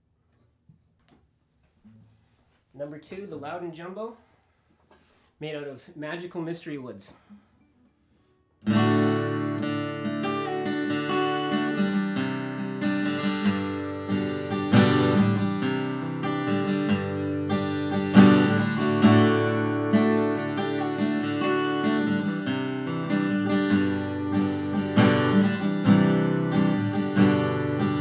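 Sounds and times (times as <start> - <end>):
acoustic guitar strumming: 7.6 - 28.0.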